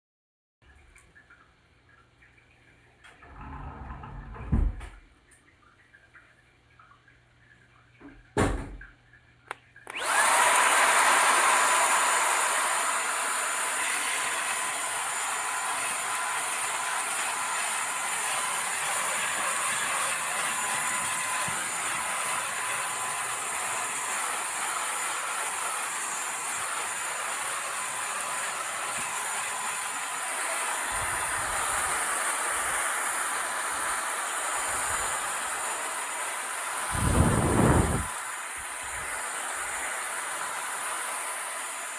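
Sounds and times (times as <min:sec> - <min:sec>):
handheld vacuum cleaner running: 0:09.9 - 0:41.9.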